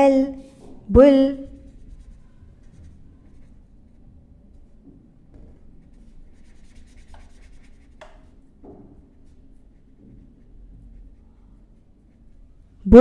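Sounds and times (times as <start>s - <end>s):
low room hum: 0.0s - 13.0s
faint scratching and rubbing: 0.4s - 4.8s, 5.5s - 12.8s.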